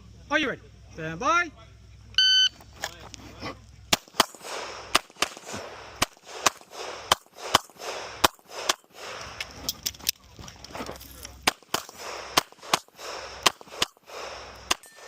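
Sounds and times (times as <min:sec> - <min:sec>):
pistol shots echoing: 0:03.9 - 0:09.6, 0:11.4 - 0:15.0.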